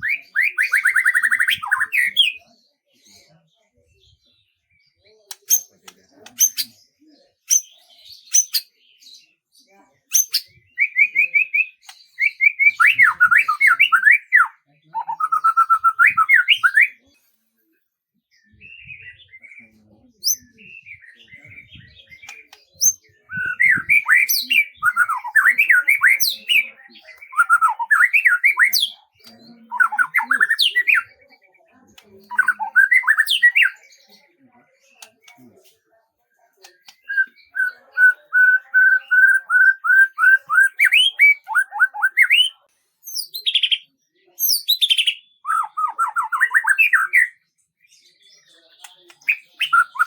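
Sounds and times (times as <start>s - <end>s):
songbird chirping and warbling: 0.0s - 50.0s.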